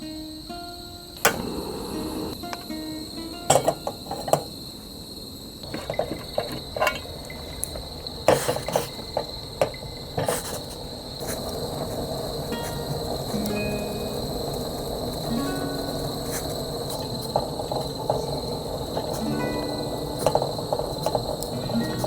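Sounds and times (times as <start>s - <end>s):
insects trilling: 0.0s - 22.0s.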